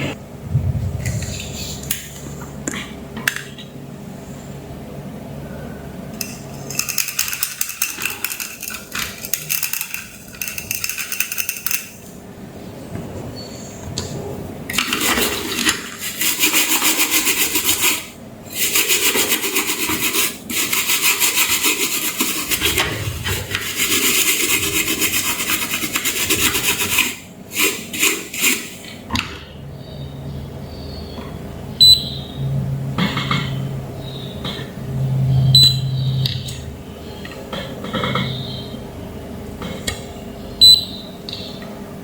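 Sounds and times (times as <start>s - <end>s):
hand scrubbing hard surface: 14.8s - 28.8s.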